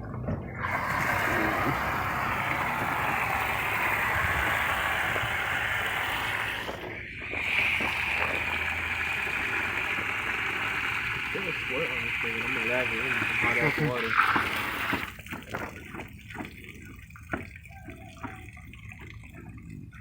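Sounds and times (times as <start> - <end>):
hissing spray of liquid: 0.6 - 15.2.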